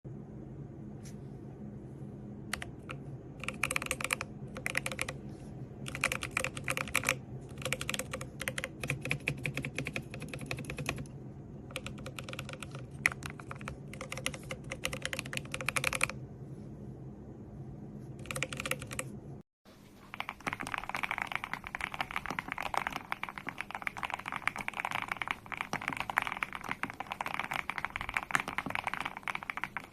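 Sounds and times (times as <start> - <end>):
mechanical keyboard typing: 2.5 - 5.2, 5.8 - 11.1, 11.7 - 16.2, 18.2 - 19.1, 20.1 - 29.9.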